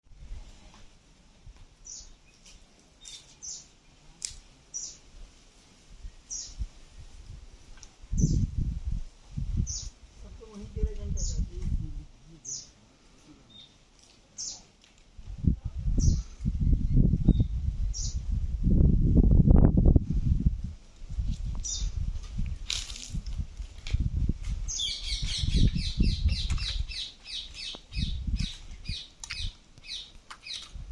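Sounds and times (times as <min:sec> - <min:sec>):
bird chirping: 0:24.7 - 0:30.7.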